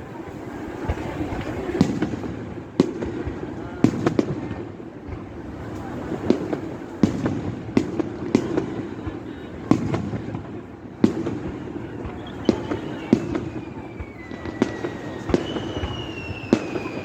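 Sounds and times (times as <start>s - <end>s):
fireworks bangs: 0.0s - 17.0s
firework whistle falling in pitch: 12.1s - 17.0s.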